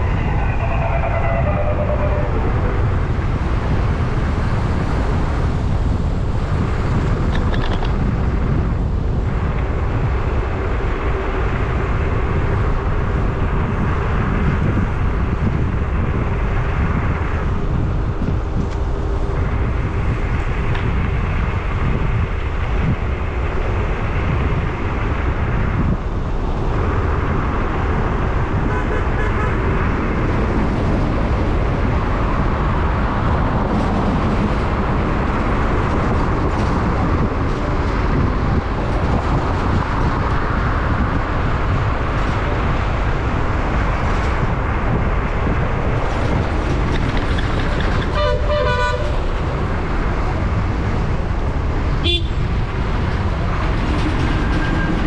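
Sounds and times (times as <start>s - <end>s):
car horn: 0.0s - 3.8s, 28.6s - 29.6s, 48.1s - 49.2s, 52.0s - 52.4s
road and wind noise: 0.0s - 55.0s
vehicle rumble on highway: 0.0s - 55.0s.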